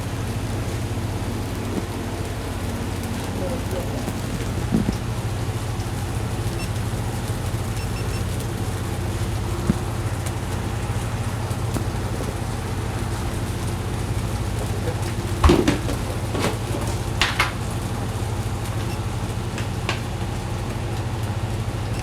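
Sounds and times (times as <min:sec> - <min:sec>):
steady low hum: 0:00.0 - 0:22.0
utensil clinking on pan: 0:15.0 - 0:17.7.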